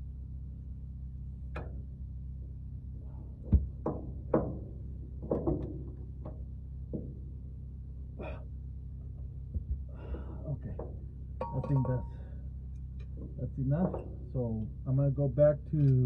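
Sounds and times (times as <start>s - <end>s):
low hum: 0.0s - 16.0s
tools knocking on metal: 10.7s - 12.1s.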